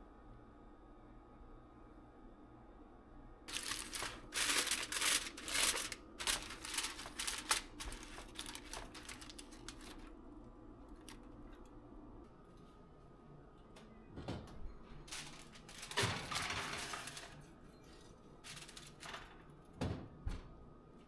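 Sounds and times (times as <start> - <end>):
scratchy crinkling rustles: 3.5 - 10.1, 15.1 - 17.4, 18.4 - 19.4.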